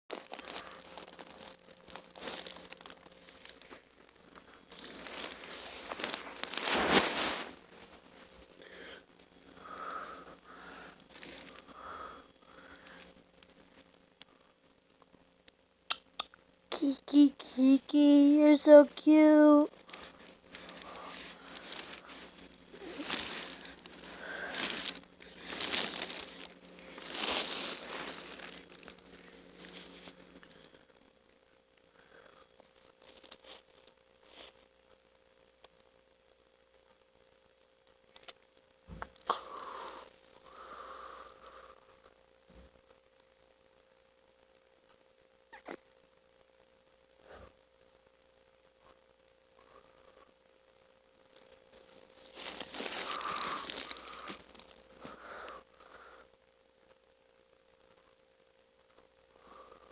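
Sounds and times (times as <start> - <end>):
crinkling rustling: 0.1 - 11.9, 19.5 - 31.4, 32.6 - 34.7, 51.3 - 55.2.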